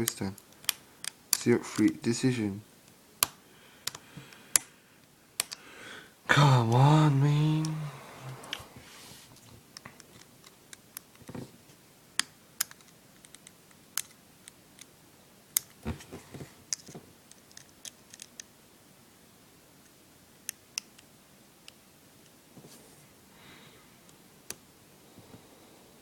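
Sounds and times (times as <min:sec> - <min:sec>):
screwdriver and small parts clicking: 0:05.4 - 0:05.6, 0:12.2 - 0:14.9, 0:16.7 - 0:18.5.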